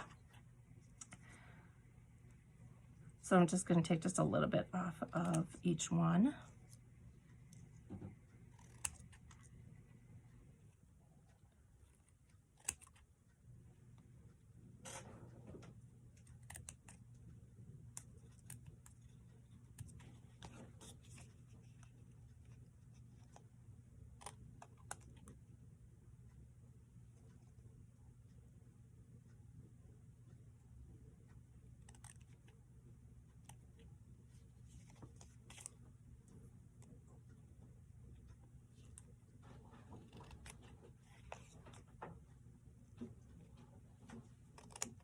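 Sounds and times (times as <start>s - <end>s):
low steady hum: 0.0s - 45.0s
scissors snipping paper: 8.4s - 9.5s, 12.0s - 13.0s, 16.2s - 17.0s, 17.9s - 21.9s, 31.8s - 32.5s, 40.0s - 41.8s, 44.4s - 45.0s.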